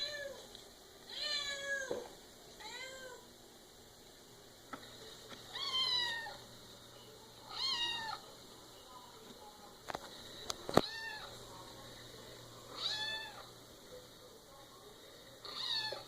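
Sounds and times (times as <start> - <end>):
cat meowing: 1.1 - 2.0, 12.8 - 13.4, 15.5 - 16.0.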